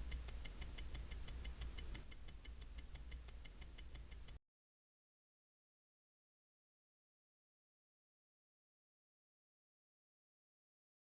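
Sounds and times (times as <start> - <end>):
watch ticking: 0.0 - 4.4.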